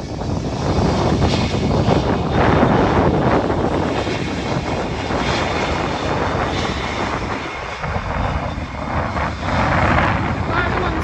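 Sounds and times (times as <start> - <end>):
airliner engines running: 0.0 - 11.0
wind buffeting microphone: 0.0 - 11.0.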